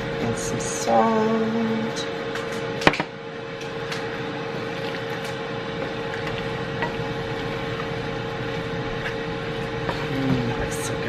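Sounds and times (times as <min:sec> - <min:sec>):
appliance fan humming: 0:00.0 - 0:11.0.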